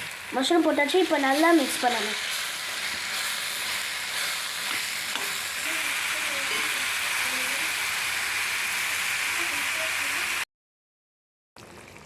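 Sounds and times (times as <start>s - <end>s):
mushrooms sizzling in oil: 0.0s - 10.4s
spoon scraping pan: 1.0s - 8.9s.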